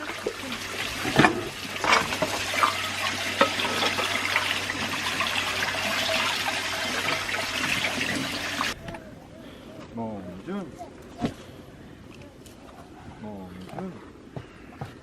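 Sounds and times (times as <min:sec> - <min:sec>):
water pouring: 0:00.0 - 0:08.8.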